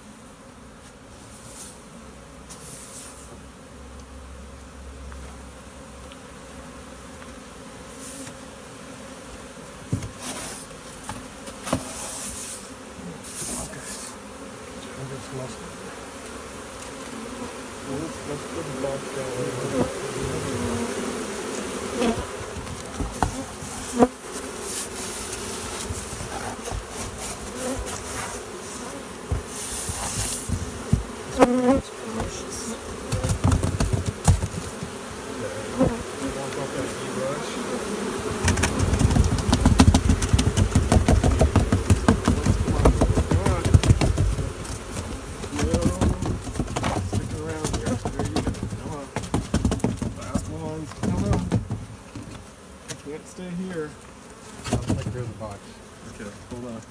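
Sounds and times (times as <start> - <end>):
honeybee swarm buzzing: 0.0 - 56.9
hive equipment knocks: 22.0 - 23.8, 29.2 - 32.4, 33.0 - 35.0, 38.3 - 53.0, 54.6 - 55.3.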